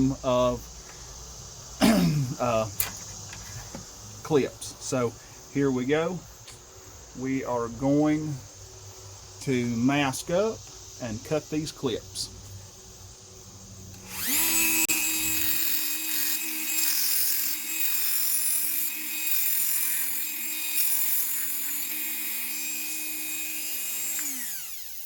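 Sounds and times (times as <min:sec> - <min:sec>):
high-speed power tool whine: 0:13.8 - 0:25.0.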